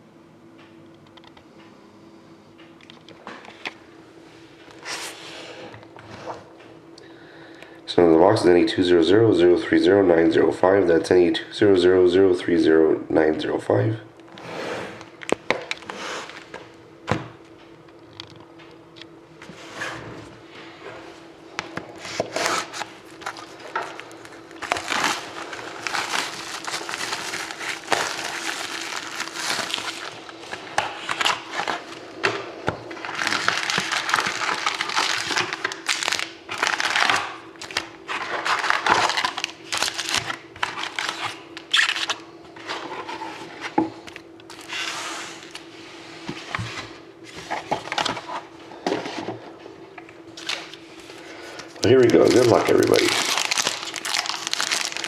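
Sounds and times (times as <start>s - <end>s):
faint steady hum: 0.0s - 55.0s
shrink wrap crinkling and tearing: 22.4s - 32.0s, 32.9s - 42.2s, 51.6s - 55.0s.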